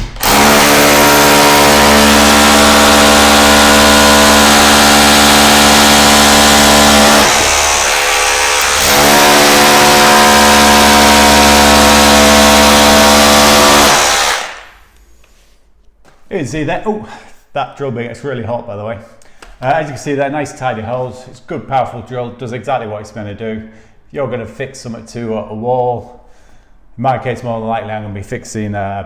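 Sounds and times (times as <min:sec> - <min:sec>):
rotary hammer drilling into wall: 0:00.0 - 0:14.8.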